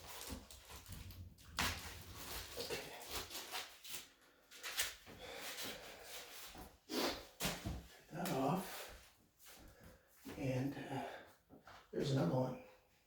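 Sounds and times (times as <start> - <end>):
packing pieces rustling and knocking: 0.0 - 4.0.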